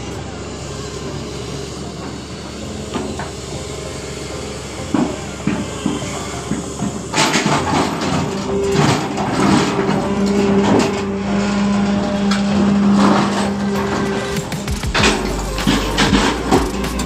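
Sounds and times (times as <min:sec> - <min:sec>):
excavator engine hum: 0:00.0 - 0:17.0
clanking and scraping: 0:02.8 - 0:17.0.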